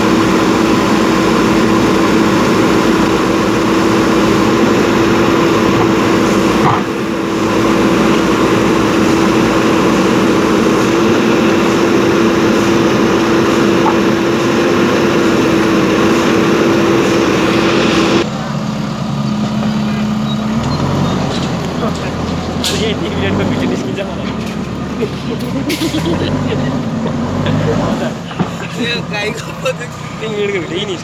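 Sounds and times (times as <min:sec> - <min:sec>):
steady whine: 0:00.0 - 0:18.6
diesel engine running: 0:00.0 - 0:31.0.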